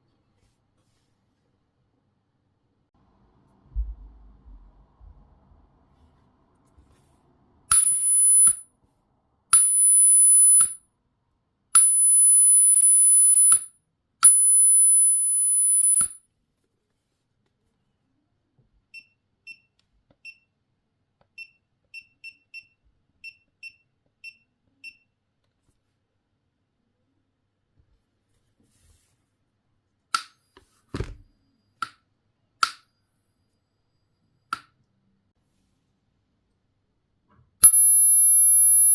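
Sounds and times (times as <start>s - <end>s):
very high-pitched tone: 7.7s - 8.6s, 11.8s - 16.2s, 37.6s - 38.9s
faint short low beeps: 37.6s - 38.9s.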